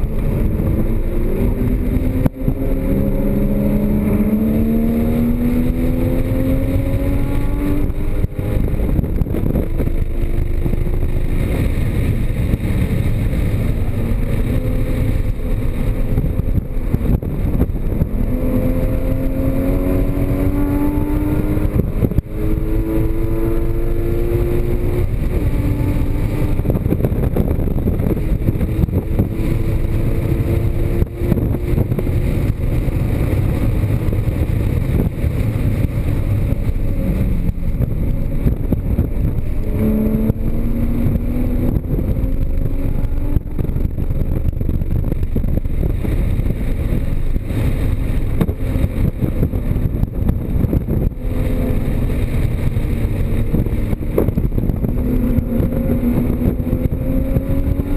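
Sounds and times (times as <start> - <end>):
car engine accelerating hard: 0.0 - 57.9.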